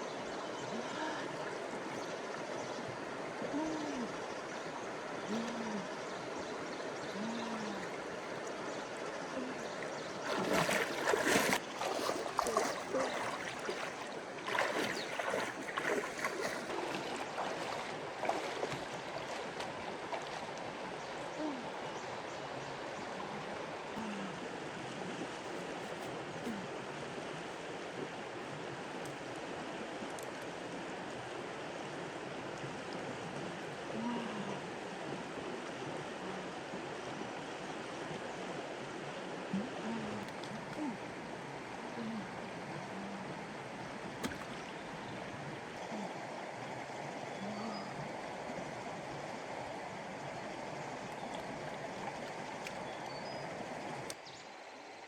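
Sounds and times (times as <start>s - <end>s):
floodwater rushing: 7.1s - 21.7s, 44.0s - 54.2s
water splashing: 9.4s - 20.7s, 44.1s - 46.1s, 50.8s - 54.2s.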